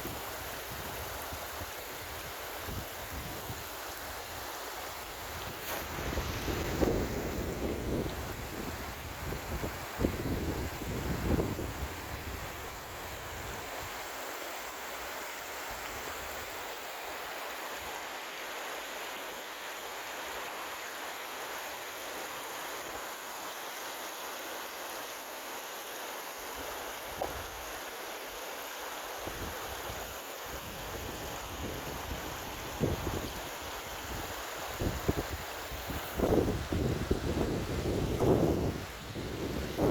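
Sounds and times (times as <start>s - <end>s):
water rushing: 0.0s - 39.9s
wind buffeting microphone: 5.5s - 12.7s, 34.7s - 39.9s.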